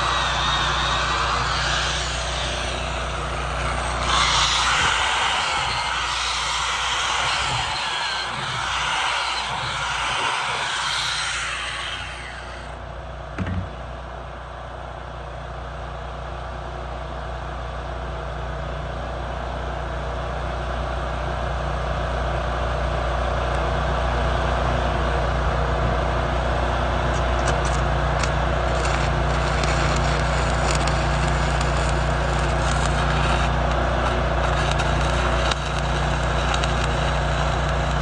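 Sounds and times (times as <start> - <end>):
welding arc hiss: 0.0 - 12.9, 27.2 - 38.0
welder engine running: 0.0 - 38.0
brief knock: 13.4 - 13.8
faint crackles: 27.4 - 38.0.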